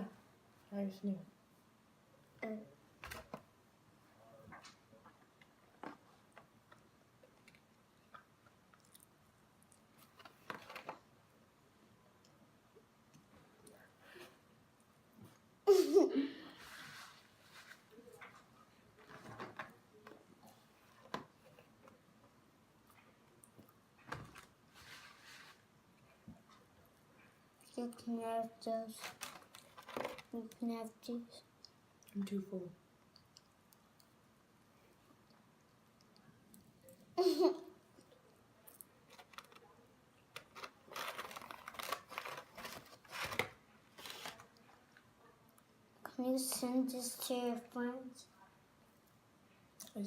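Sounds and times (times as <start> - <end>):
food packaging rustling and crinkling: 9.9 - 11.1, 24.0 - 25.7, 28.8 - 30.4, 40.3 - 44.8.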